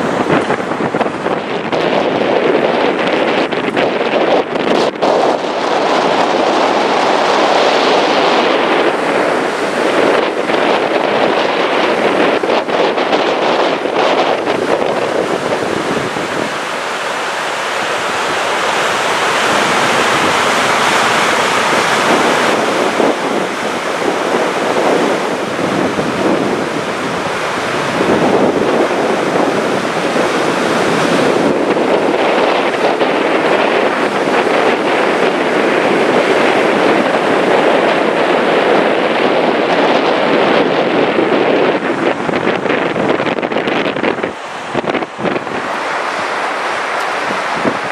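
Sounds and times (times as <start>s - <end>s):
waterfall rushing: 0.0s - 47.9s
wind buffeting microphone: 0.0s - 47.9s.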